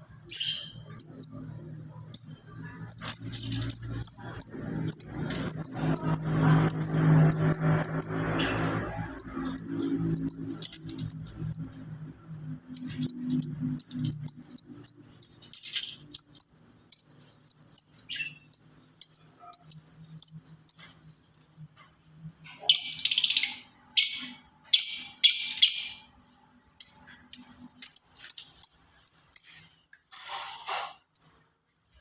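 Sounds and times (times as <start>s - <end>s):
songbird chirping: 0.0s - 21.2s, 21.8s - 31.5s
harsh bird calls: 12.6s - 20.4s.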